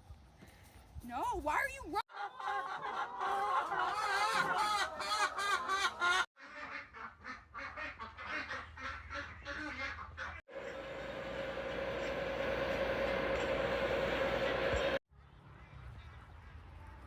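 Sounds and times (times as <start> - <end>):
ducks quacking: 2.1 - 10.4.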